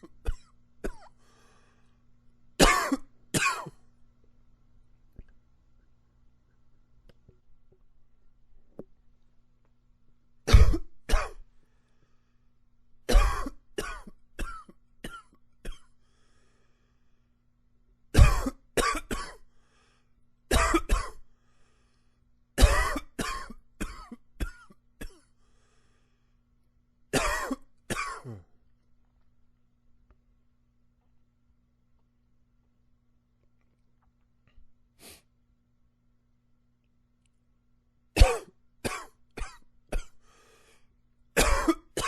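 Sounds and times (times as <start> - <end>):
man coughing: 0.0 - 1.1, 2.6 - 3.8, 13.1 - 15.9, 18.2 - 19.4, 20.5 - 21.2, 22.6 - 25.2, 27.2 - 28.6, 38.2 - 40.1, 41.4 - 42.0.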